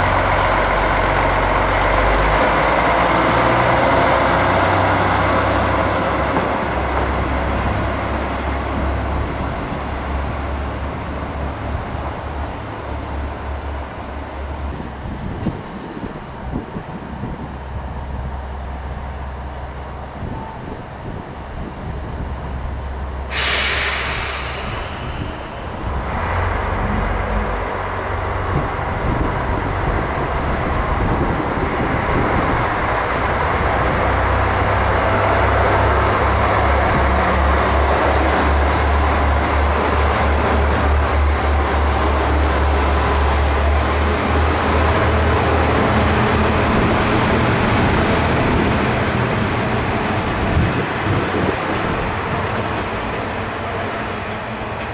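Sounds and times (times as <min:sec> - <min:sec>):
diesel train rumbling: 0:00.0 - 0:54.9
short loud rush of noise: 0:23.3 - 0:27.2.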